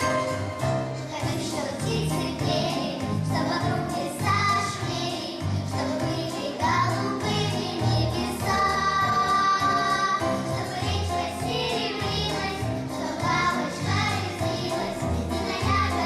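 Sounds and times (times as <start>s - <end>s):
instrumental backing with pulsing bass: 0.0s - 16.0s
children singing: 1.0s - 16.0s.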